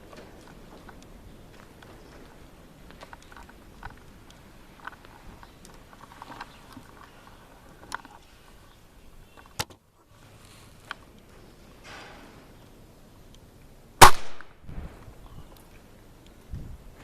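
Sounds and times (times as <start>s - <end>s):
air rifle shot: 14.0s - 14.8s.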